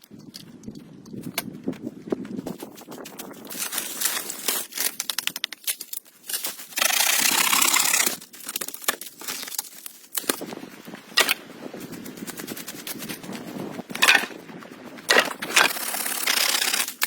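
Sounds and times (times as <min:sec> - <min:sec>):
loud rustling rush: 0:01.6 - 0:05.3, 0:06.0 - 0:17.0
dry leaves crunching underfoot: 0:02.4 - 0:11.9.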